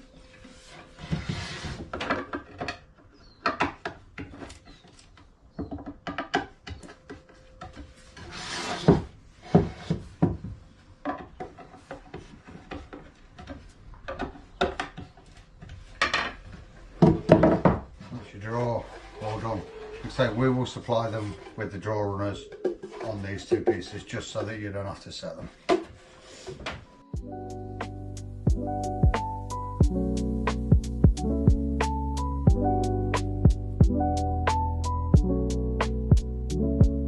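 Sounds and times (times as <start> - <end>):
wood scraping rubs: 0.1 - 2.3, 6.8 - 10.6, 11.2 - 26.9
wooden boards knocking and clicking: 1.7 - 7.9, 8.8 - 18.0, 22.2 - 24.5, 25.6 - 26.9.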